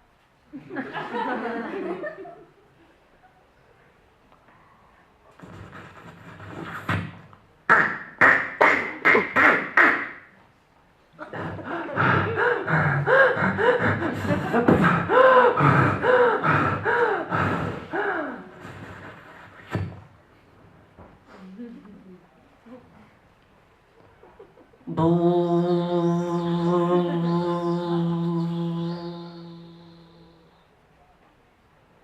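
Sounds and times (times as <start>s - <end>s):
pitched mouth noise sweeps: 5.4s - 10.2s, 25.0s - 30.6s
beatbox percussive hits: 5.4s - 10.3s, 14.2s - 16.0s.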